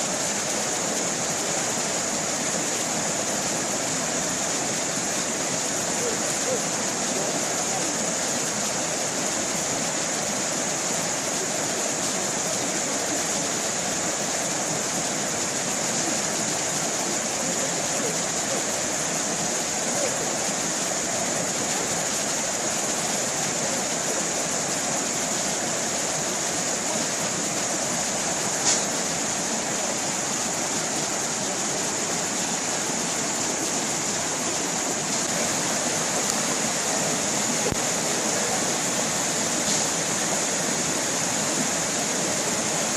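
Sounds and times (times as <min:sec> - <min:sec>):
stream running over rocks: 0:00.0 - 0:42.9
sharp click: 0:28.6 - 0:28.9.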